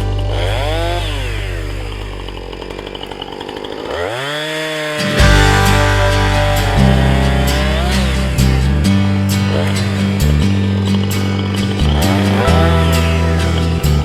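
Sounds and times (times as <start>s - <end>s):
chainsaw idling and revving: 0.0s - 14.0s
background music: 5.0s - 14.0s.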